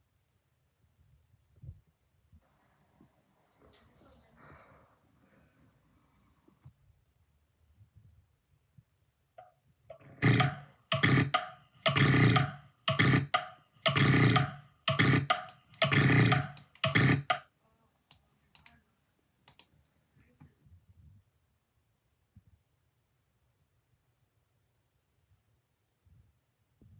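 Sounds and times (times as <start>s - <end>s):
person snoring loudly: 10.0s - 17.4s.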